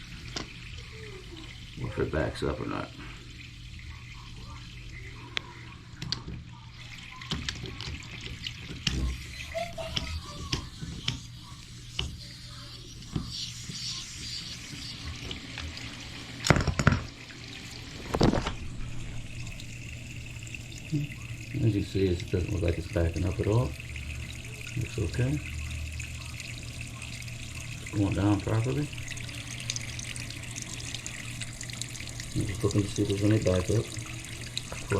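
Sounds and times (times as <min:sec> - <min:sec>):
water running into a drain: 0:00.0 - 0:34.9.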